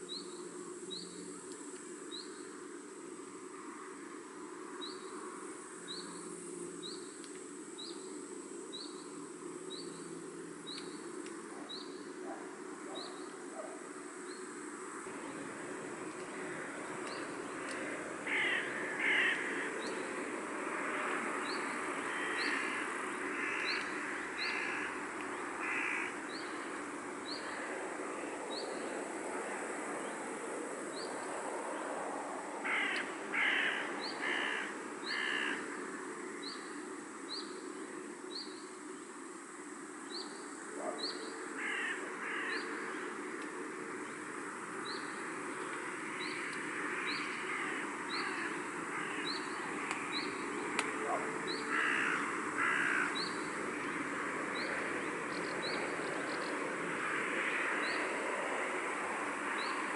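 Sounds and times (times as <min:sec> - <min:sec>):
outdoor background hiss: 0:00.0 - 0:59.9
crow cawing: 0:17.6 - 0:19.9, 0:22.0 - 0:25.0, 0:25.6 - 0:26.2, 0:32.6 - 0:35.8, 0:41.6 - 0:42.7, 0:46.2 - 0:49.6, 0:51.6 - 0:53.2, 0:57.0 - 0:58.1.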